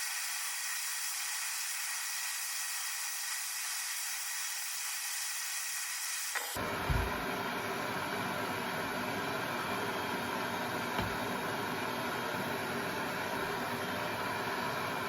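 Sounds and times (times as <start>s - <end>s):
gas torch hissing: 0.0s - 7.3s
gas torch roaring: 4.8s - 15.0s
torch igniting click and thump: 11.0s - 11.3s.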